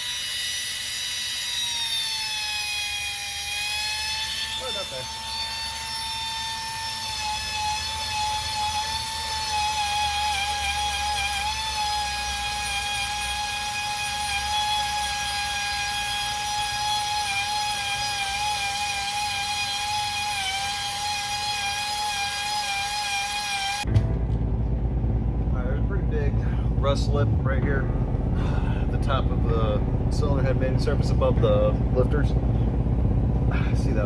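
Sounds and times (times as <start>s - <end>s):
pneumatic angle grinder whine: 0.0s - 24.0s.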